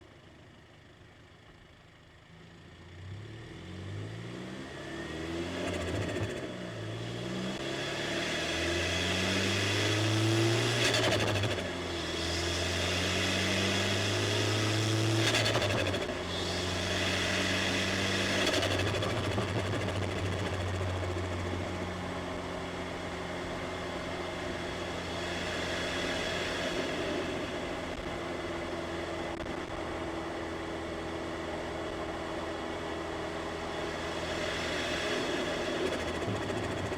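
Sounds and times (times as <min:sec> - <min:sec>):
car engine accelerating: 0:03.2 - 0:29.8, 0:33.1 - 0:36.9
turbo flutter: 0:34.9 - 0:36.9.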